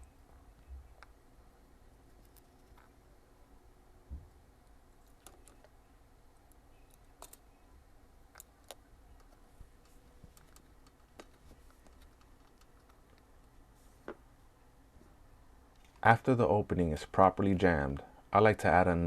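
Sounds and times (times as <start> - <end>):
faint hum: 0.0 - 19.0.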